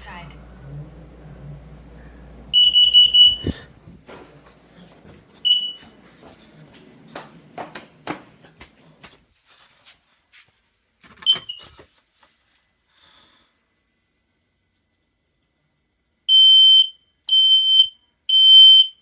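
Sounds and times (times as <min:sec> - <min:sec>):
smoke alarm chirps: 0:02.5 - 0:03.8, 0:05.4 - 0:05.9, 0:16.3 - 0:19.0.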